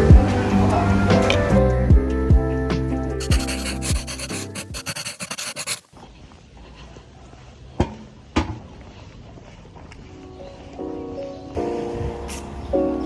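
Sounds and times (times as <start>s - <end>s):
rapid scraping strokes: 3.2s - 5.9s.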